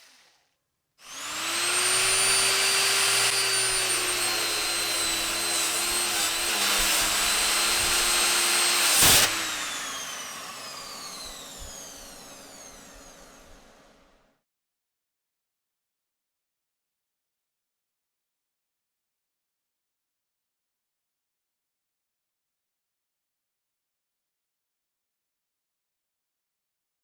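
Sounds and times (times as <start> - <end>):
angle grinder whine: 1.1 - 13.8.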